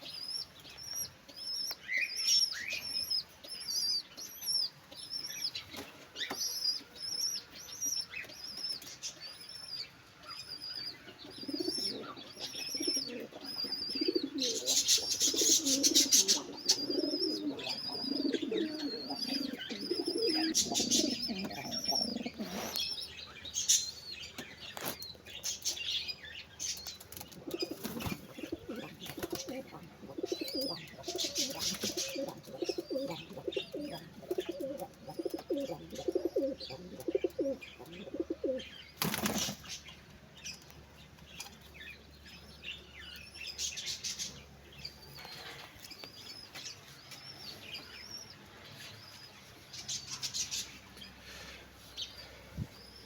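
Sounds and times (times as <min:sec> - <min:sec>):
small birds chirping: 0:00.0 - 0:53.0
pigeons cooing: 0:10.6 - 0:23.8, 0:27.3 - 0:39.6.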